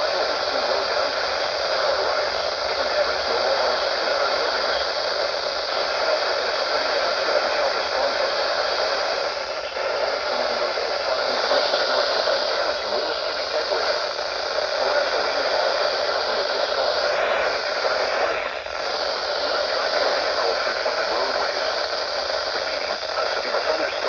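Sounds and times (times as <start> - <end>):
radio static hiss: 0.0 - 24.0.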